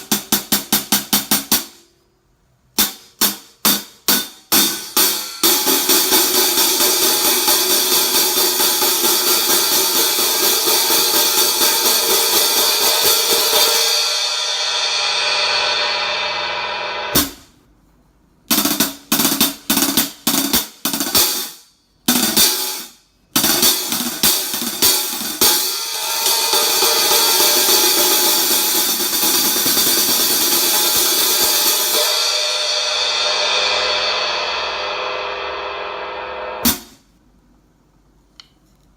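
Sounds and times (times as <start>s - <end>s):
ringing cymbal wash: 4.7s - 17.2s, 25.4s - 36.9s
short hi-hat hits: 25.4s - 37.1s.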